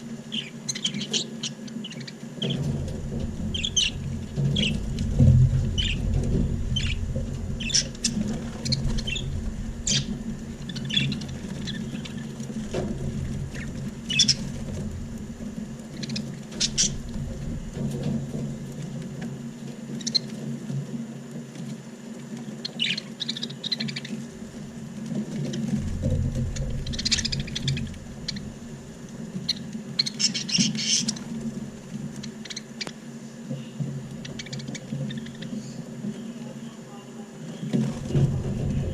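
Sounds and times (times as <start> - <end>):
steady low hum: 0.0 - 38.9
budgerigars chirping: 0.3 - 2.6, 3.4 - 4.8, 5.8 - 6.0, 6.7 - 7.0, 7.6 - 12.3, 13.5 - 14.5, 16.0 - 17.0, 22.6 - 24.2, 26.8 - 28.6, 29.4 - 31.3, 32.2 - 33.0, 34.2 - 35.7.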